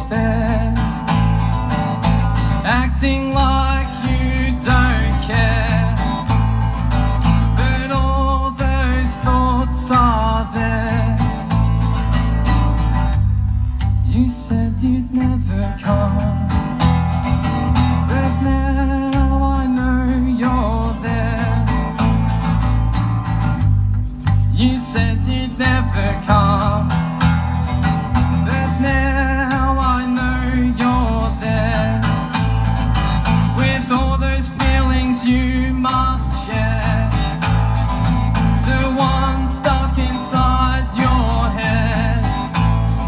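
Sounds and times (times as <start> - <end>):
live band playing: 15.9 - 25.0, 25.6 - 43.0.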